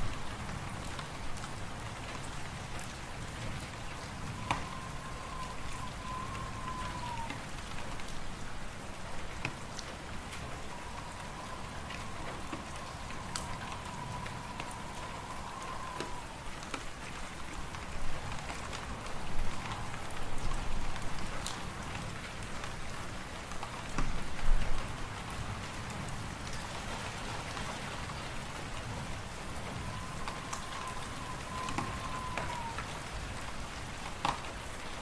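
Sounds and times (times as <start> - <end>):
wind hissing: 3.6 - 7.3, 10.0 - 16.6, 28.9 - 32.8
faint whistle: 3.9 - 7.4, 10.5 - 16.5, 29.4 - 33.0.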